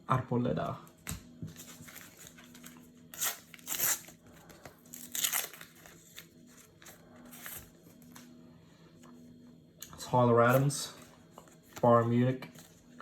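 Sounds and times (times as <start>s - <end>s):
wrapper crinkling and rustling: 1.6s - 8.0s.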